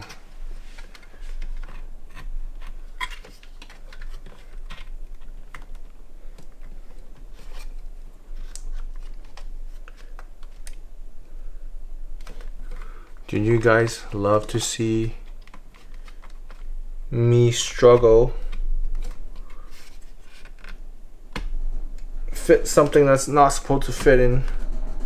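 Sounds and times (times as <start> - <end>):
steady low hum: 9.5 - 25.0.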